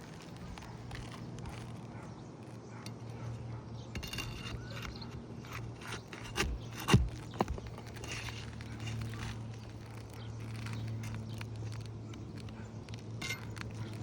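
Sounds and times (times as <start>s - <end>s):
roofing tool scraping shingles: 4.0s - 14.0s.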